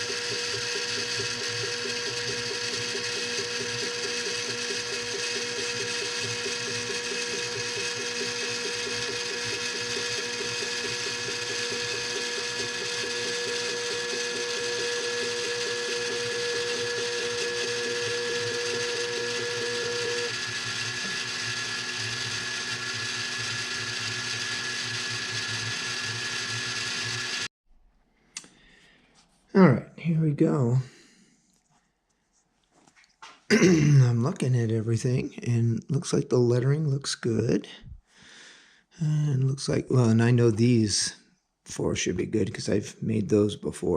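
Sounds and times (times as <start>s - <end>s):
printer stepper motors whining: 0.0s - 27.5s.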